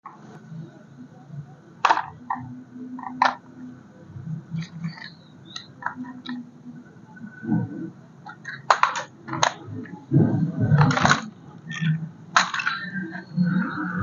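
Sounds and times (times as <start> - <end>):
packaging clicks and knocks: 8.4 - 9.6.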